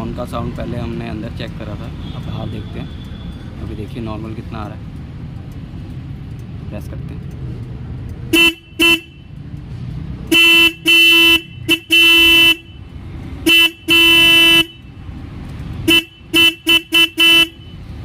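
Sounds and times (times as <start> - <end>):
motorcycle horn honking: 8.3 - 9.3, 10.3 - 12.8, 13.4 - 14.9, 15.8 - 17.8.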